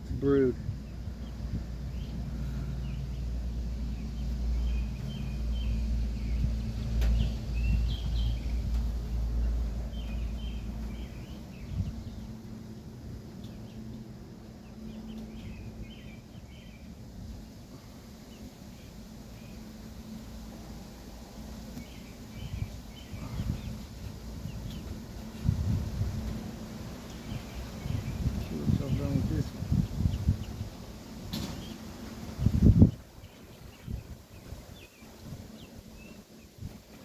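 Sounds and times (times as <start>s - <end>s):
wind buffeting microphone: 0.0s - 13.8s, 21.8s - 37.0s
birds chirping: 0.0s - 37.0s
honeybees humming: 0.7s - 37.0s.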